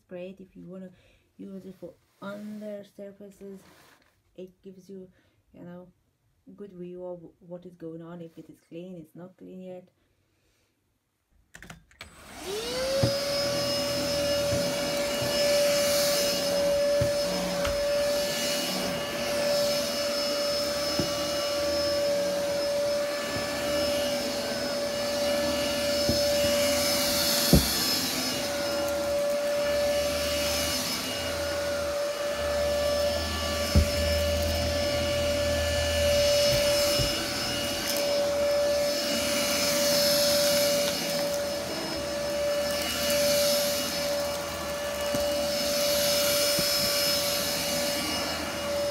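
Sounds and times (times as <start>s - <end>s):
vacuum motor whining: 12.0s - 48.9s.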